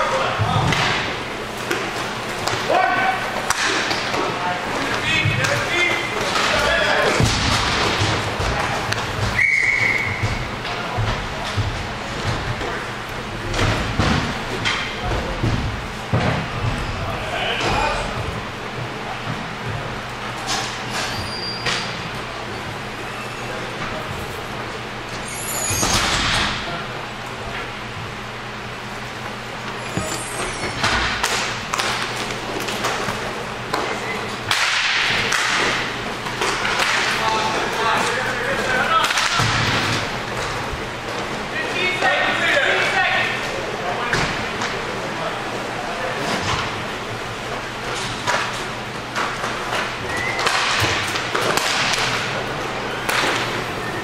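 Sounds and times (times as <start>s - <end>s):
hockey sticks striking puck: 0.4s - 12.8s, 30.0s - 40.6s, 47.9s - 53.8s.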